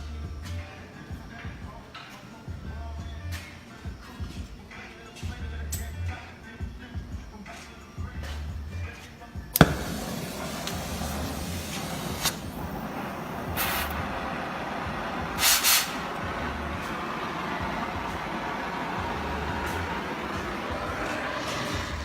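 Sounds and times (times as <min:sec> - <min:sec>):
torch flame hissing: 0:09.6 - 0:22.0
torch ignition pop: 0:09.6 - 0:22.0.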